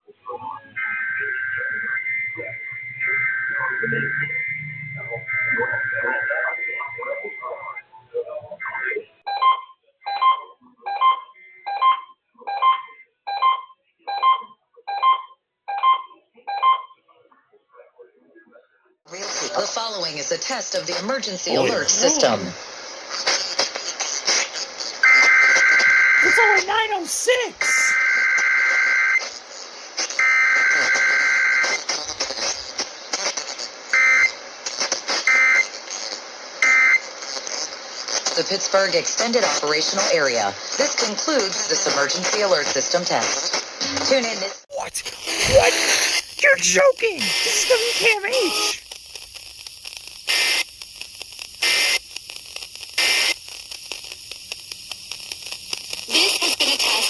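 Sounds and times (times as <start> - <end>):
electronic beeps over radio: 0.4 - 15.2, 45.2 - 48.8
warbling digital data bursts: 19.6 - 23.0, 44.8 - 57.0.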